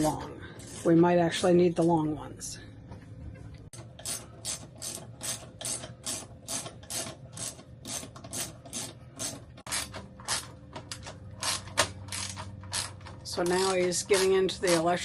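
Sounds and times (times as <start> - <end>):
ratchet wrench clicking: 4.0 - 10.4.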